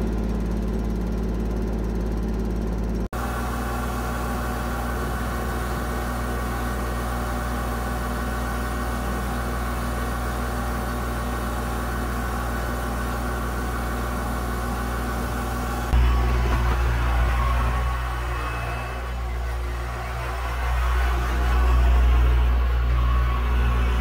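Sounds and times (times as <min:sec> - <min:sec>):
engine running steadily: 0:00.0 - 0:24.0.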